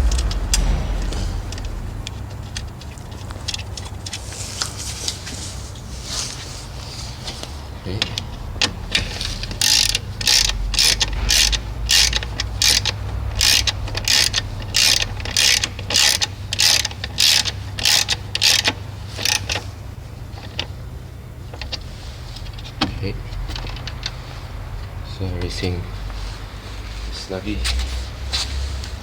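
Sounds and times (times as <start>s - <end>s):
ratchet wrench clicking: 8.0s - 19.6s.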